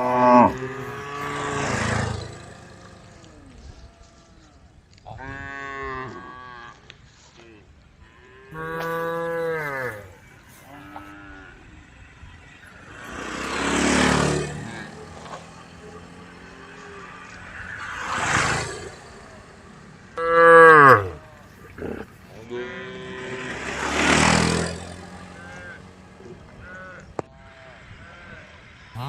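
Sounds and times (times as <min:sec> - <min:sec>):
cows mooing: 0:00.0 - 0:04.3, 0:08.3 - 0:11.7, 0:12.7 - 0:19.4, 0:20.1 - 0:27.2.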